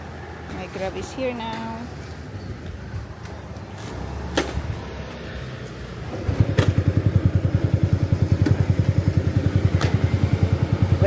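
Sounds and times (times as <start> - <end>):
motorbike engine idling: 6.0 - 11.0.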